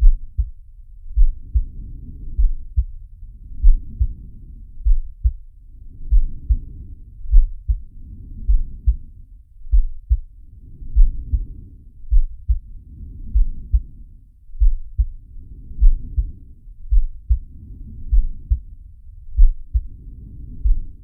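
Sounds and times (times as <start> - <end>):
low double thump heartbeat: 0.0 - 3.0, 3.6 - 4.2, 4.8 - 5.5, 6.1 - 6.7, 7.3 - 11.5, 12.1 - 12.7, 13.3 - 14.0, 14.6 - 15.2, 15.8 - 17.5, 18.1 - 20.0, 20.6 - 21.0.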